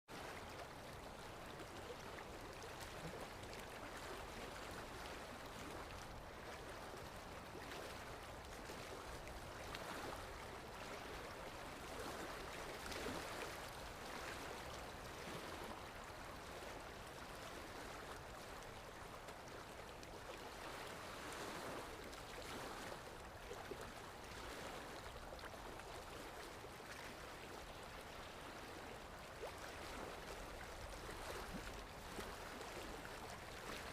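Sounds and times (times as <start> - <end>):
water lapping and splashing: 0.1 - 33.9.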